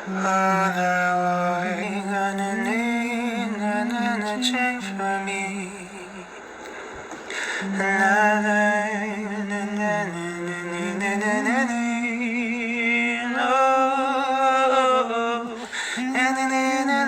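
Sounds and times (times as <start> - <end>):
man singing long-held notes: 0.0 - 6.6, 7.3 - 17.0
singer breath: 6.2 - 7.8, 15.6 - 16.1.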